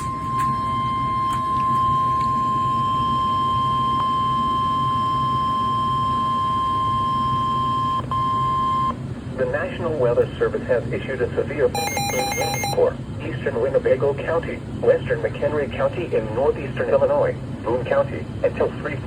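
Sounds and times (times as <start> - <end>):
steady high warning beep: 0.0 - 9.0, 11.7 - 12.8
radio hum and hiss: 9.3 - 19.0.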